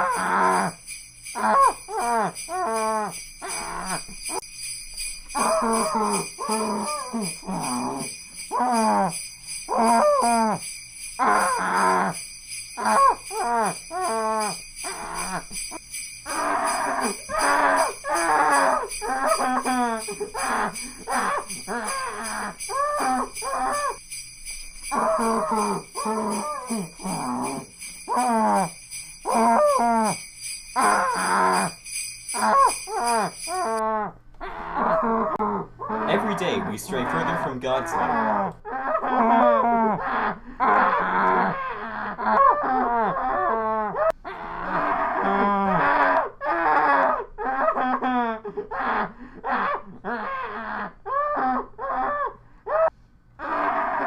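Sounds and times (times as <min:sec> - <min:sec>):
sleigh bells jingling: 0:00.0 - 0:33.8, 0:36.2 - 0:38.0.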